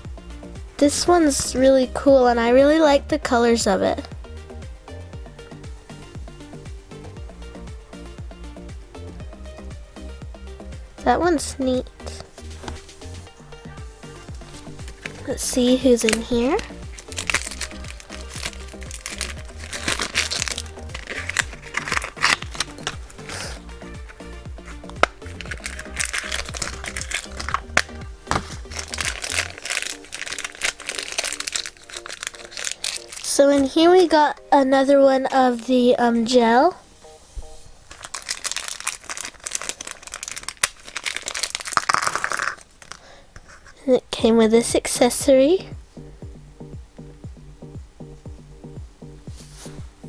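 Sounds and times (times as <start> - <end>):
background music with bass line: 0.0 - 34.2, 44.2 - 50.0
plastic packaging crinkling: 14.1 - 33.8, 37.4 - 43.8.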